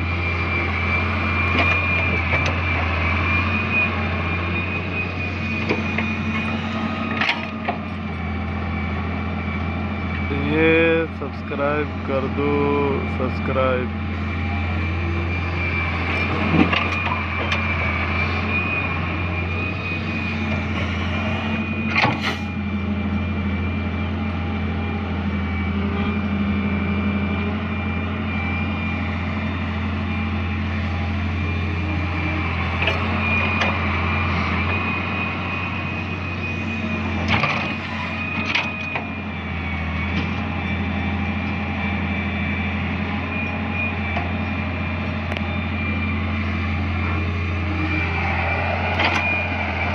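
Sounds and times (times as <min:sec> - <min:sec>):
excavator diesel engine running: 0:00.0 - 0:49.9
high whine: 0:41.4 - 0:49.9.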